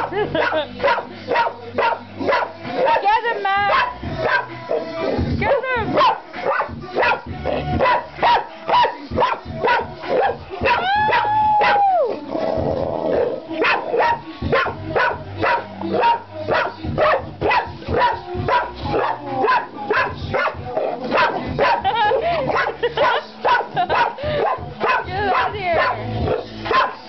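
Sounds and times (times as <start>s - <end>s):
puppy yapping: 7.8s - 11.8s.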